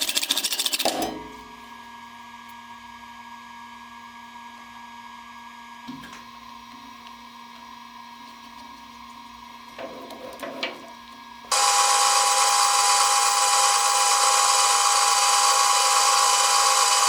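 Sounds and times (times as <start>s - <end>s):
machine tool motor humming: 11.5s - 17.0s.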